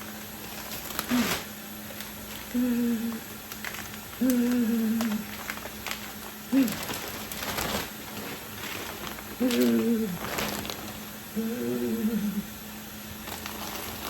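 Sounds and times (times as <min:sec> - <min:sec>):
person humming: 0:02.5 - 0:03.2, 0:04.2 - 0:05.3, 0:06.5 - 0:06.8, 0:09.4 - 0:10.2, 0:11.3 - 0:12.5.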